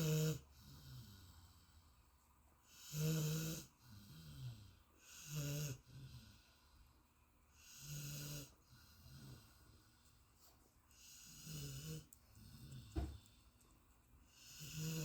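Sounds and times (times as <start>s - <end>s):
dog snoring: 0.0s - 1.8s, 2.7s - 6.6s, 7.6s - 9.6s, 10.9s - 13.3s, 14.3s - 15.0s.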